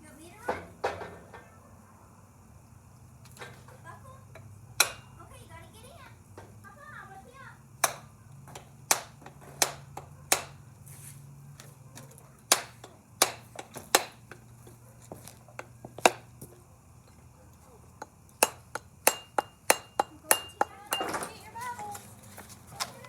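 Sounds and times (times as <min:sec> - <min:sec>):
hatchet head knocked onto handle: 0:04.8 - 0:05.1, 0:07.8 - 0:10.6, 0:12.5 - 0:14.4, 0:15.6 - 0:16.3, 0:18.0 - 0:21.3.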